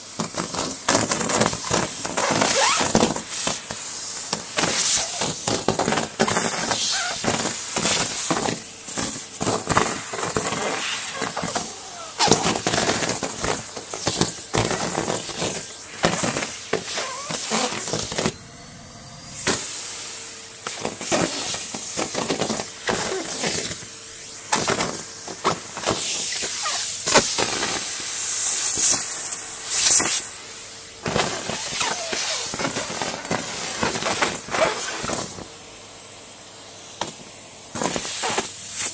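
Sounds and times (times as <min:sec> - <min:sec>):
vacuum cleaner running: 0:00.0 - 0:38.9
leaves crackling through hose: 0:02.2 - 0:03.3, 0:09.0 - 0:18.1.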